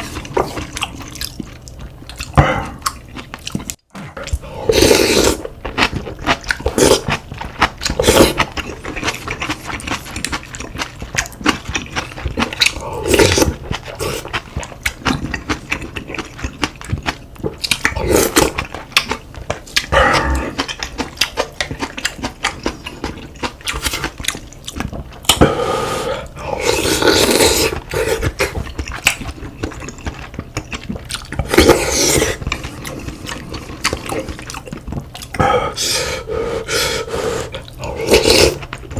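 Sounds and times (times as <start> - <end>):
chewing with crunches: 0.0 - 36.1, 36.8 - 38.9
slurping: 4.0 - 5.5, 25.3 - 28.7, 31.0 - 34.6, 35.2 - 38.9.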